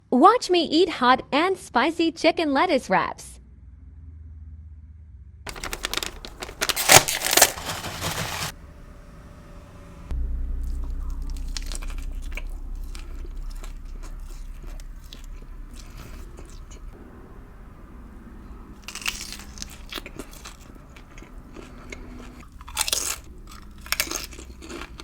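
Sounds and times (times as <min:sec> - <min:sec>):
low steady hum: 0:03.4 - 0:25.0
crunchy bites: 0:05.5 - 0:08.5, 0:10.7 - 0:16.9, 0:18.8 - 0:25.0
chewing with crunches: 0:10.7 - 0:17.0, 0:18.6 - 0:25.0.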